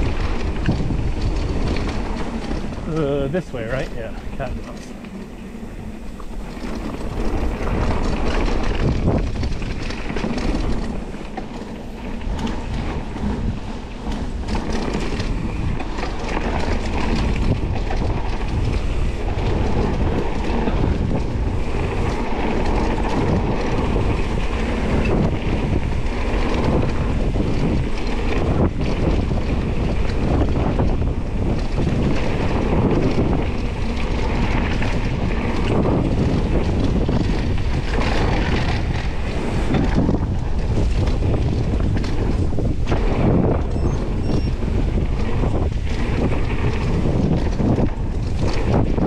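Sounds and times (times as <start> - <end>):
bike frame rattling: 0.0 - 49.0
bike tyres rumbling on dirt: 0.0 - 49.0
wind buffeting microphone: 0.0 - 49.0.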